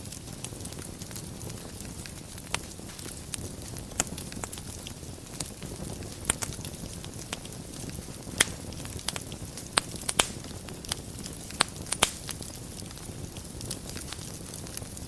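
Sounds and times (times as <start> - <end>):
fire crackles and pops: 0.0 - 15.0
wood fire rumbling: 0.0 - 15.0.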